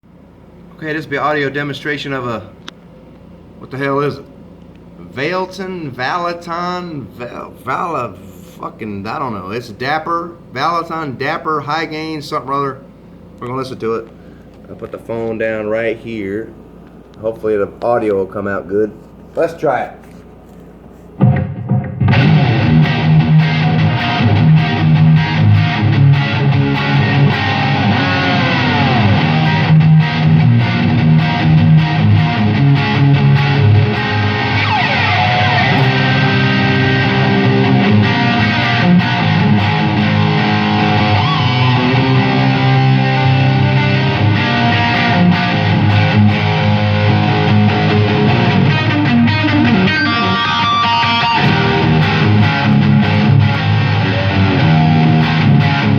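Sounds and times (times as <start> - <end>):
distorted electric guitar riffs: 21.2 - 55.9.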